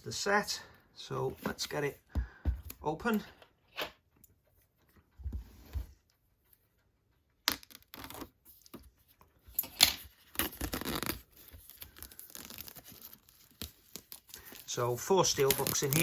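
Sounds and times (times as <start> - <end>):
plastic wrap tearing and peeling: 9.7 - 16.0.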